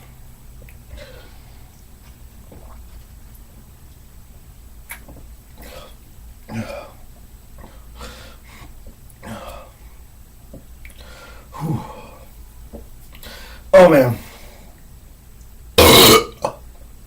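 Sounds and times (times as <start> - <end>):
man burping: 15.8 - 16.6.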